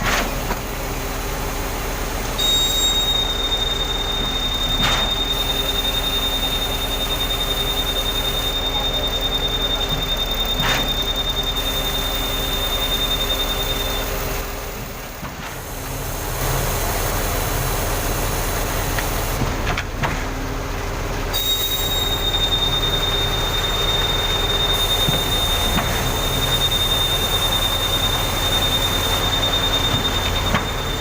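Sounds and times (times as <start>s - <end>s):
concrete pump engine hum: 0.0s - 31.0s
thin high whine: 2.3s - 14.7s, 21.3s - 31.0s.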